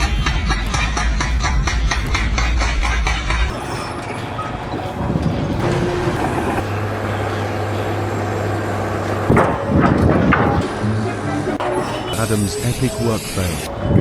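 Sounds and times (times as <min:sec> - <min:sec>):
heavy engine running: 0:00.0 - 0:14.0.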